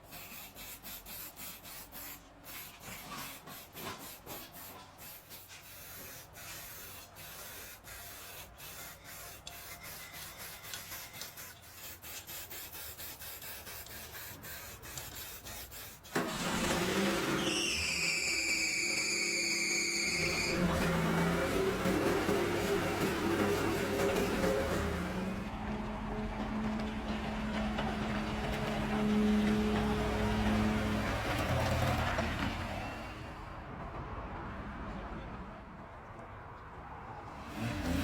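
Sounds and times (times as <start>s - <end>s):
scraping strokes on a surface: 0.0s - 17.8s.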